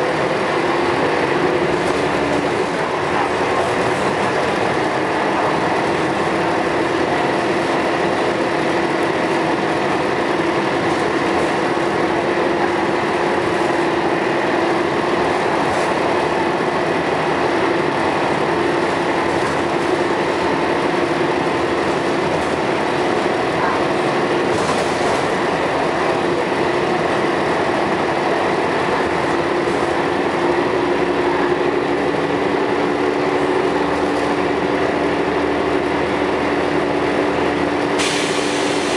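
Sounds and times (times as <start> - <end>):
bus diesel engine droning: 0.0 - 38.9
road noise: 0.0 - 38.9.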